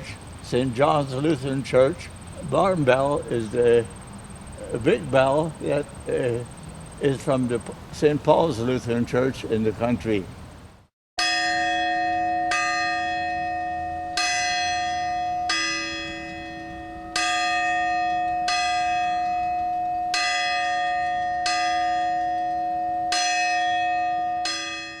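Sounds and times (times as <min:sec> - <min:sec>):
church bell struck by hammer: 0:11.2 - 0:25.0.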